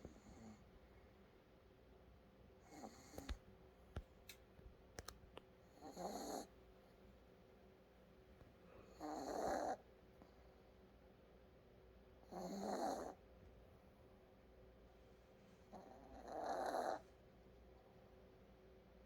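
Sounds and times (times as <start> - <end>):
animal snoring: 2.6 - 3.2, 5.8 - 6.5, 8.9 - 9.8, 12.2 - 13.2, 15.7 - 17.1.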